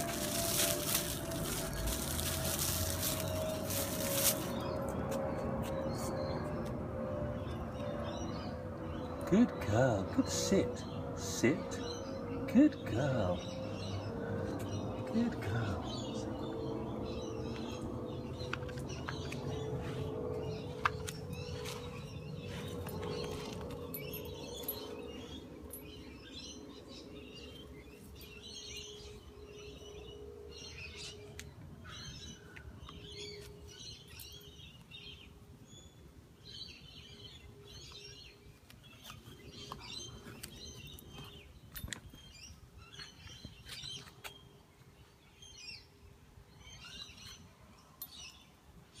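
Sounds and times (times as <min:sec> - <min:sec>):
small birds chirping: 0:00.0 - 0:06.8, 0:07.4 - 0:49.0
steady low hum: 0:00.0 - 0:43.5.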